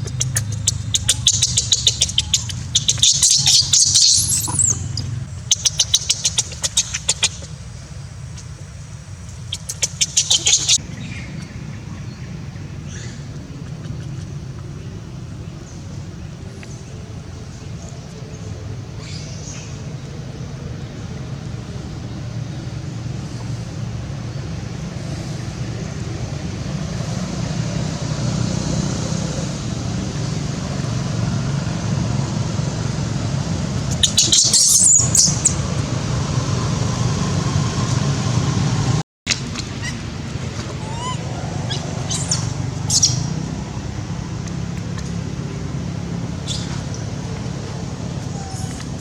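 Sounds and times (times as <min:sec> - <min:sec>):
low rumbling background noise: 0:00.0 - 0:49.0
shrill high squealing: 0:40.8 - 0:43.2.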